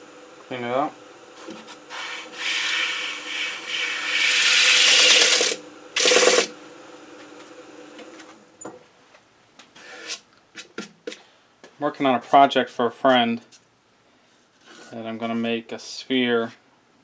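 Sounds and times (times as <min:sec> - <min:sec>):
rubber stick scraping sanding disc: 0:01.4 - 0:06.4
lathe whine: 0:01.4 - 0:06.5.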